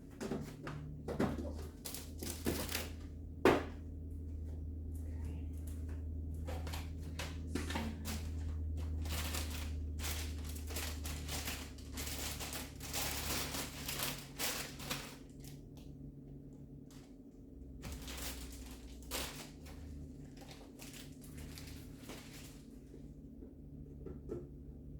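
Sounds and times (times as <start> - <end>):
steady low hum: 0.0 - 24.9
packaging rustling and clicking: 6.5 - 15.5, 17.8 - 22.7.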